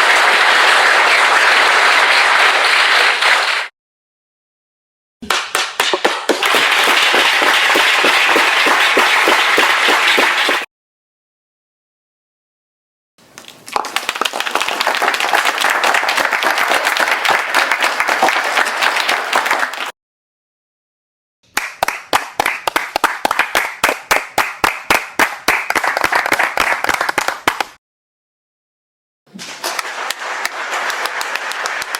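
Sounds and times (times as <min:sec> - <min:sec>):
crowd clapping: 0:00.0 - 0:03.7, 0:05.2 - 0:10.7, 0:13.7 - 0:20.0, 0:21.5 - 0:27.8, 0:29.4 - 0:31.9
crisp evenly spaced claps: 0:05.2 - 0:10.7, 0:13.7 - 0:19.9, 0:21.6 - 0:27.8, 0:29.6 - 0:31.9.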